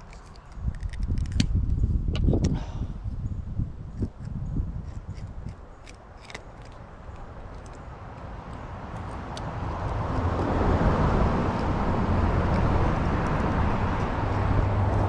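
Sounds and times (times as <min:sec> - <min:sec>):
vehicle passing on road: 0:05.9 - 0:15.0.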